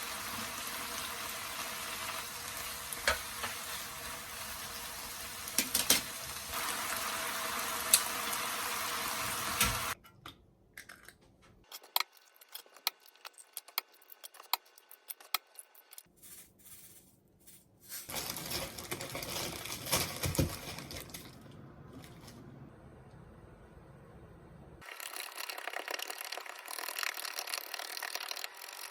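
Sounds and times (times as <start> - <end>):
food sizzling in a pan: 0.0 - 10.0
utensils and dishes clinking: 5.5 - 6.2.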